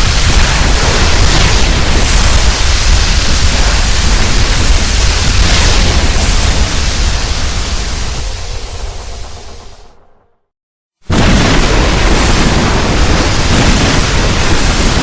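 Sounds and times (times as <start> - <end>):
loud steady rushing noise: 0.0 - 10.4, 11.1 - 15.0
deep rumble: 0.0 - 10.5.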